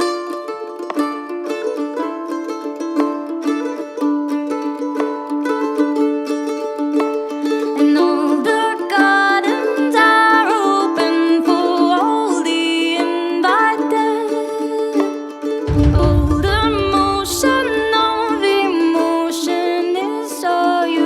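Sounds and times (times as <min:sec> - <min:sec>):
plucked mandolin notes: 0:00.0 - 0:21.0
steady low drone: 0:15.7 - 0:18.4.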